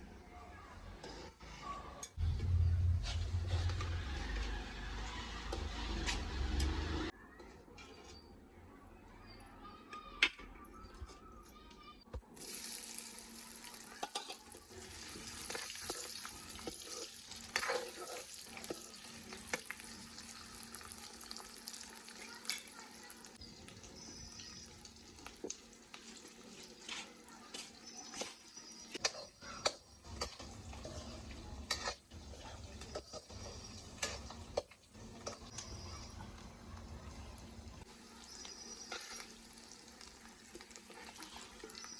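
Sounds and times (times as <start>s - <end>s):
food sizzling in a pan: 12.3s - 41.9s.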